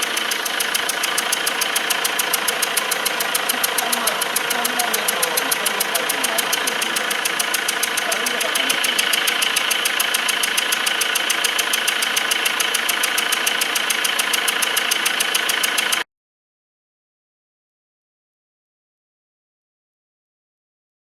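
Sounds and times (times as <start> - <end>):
diesel engine ticking: 0.0 - 16.0.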